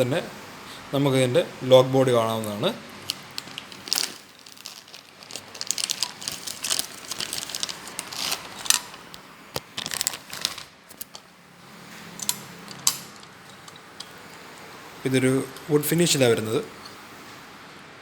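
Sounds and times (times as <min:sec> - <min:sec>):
packaging rustling: 0:03.0 - 0:11.2, 0:12.2 - 0:14.3.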